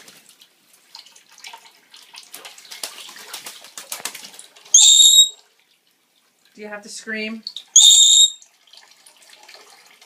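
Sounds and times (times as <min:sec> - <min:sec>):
bird splashing in water: 0:02.3 - 0:05.3
running tap water: 0:04.6 - 0:05.4, 0:06.4 - 0:10.0
bird harsh high scream: 0:04.8 - 0:05.4, 0:07.8 - 0:08.4.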